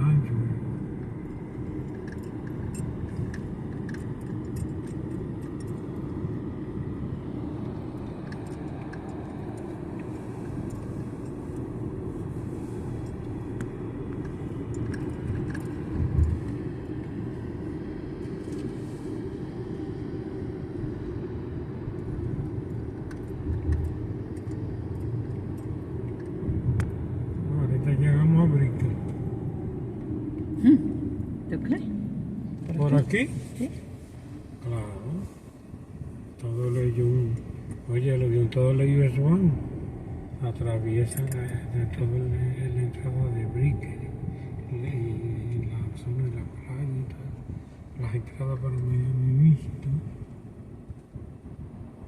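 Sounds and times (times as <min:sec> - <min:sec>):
car cabin road rumble: 0:00.0 - 0:52.0.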